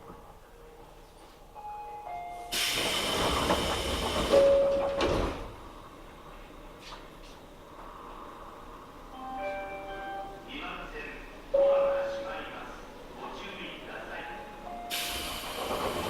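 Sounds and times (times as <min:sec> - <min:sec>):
train doors hissing air: 0:02.4 - 0:05.8, 0:14.8 - 0:16.0.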